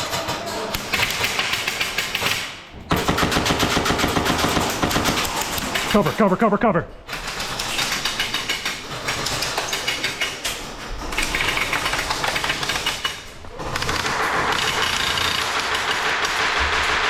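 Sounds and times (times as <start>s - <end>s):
airsoft guns firing bursts: 0.1s - 6.3s, 11.2s - 17.0s.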